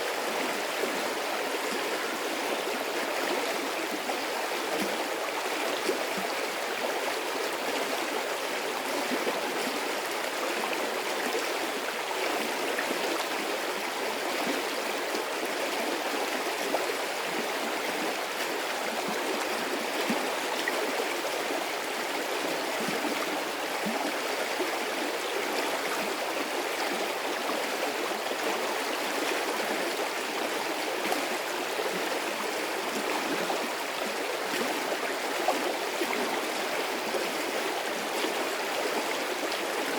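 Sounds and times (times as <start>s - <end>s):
stream of water flowing: 0.0s - 39.9s.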